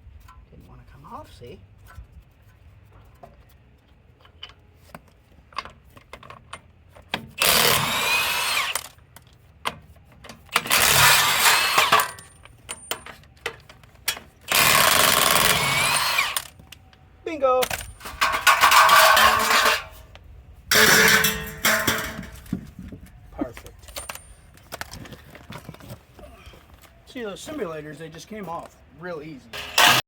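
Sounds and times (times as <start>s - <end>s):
handheld power tool bursts: 7.4s - 9.0s, 10.5s - 12.3s, 14.5s - 16.6s, 29.6s - 30.0s.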